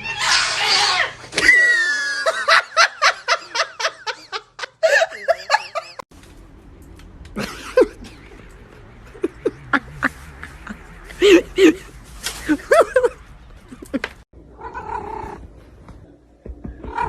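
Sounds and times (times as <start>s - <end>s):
person giggling: 9.1s - 14.1s.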